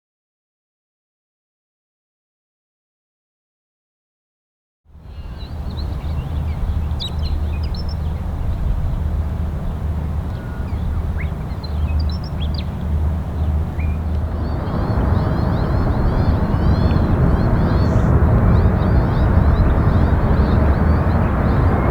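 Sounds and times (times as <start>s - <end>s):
birds chirping: 5.0s - 21.9s
jet airliner approaching: 5.0s - 21.9s
steady low rumble: 5.0s - 21.9s.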